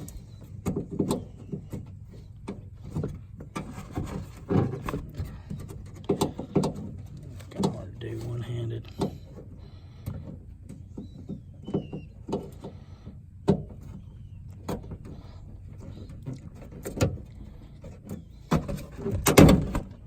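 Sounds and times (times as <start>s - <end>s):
knocks and rattles: 0.0s - 9.5s.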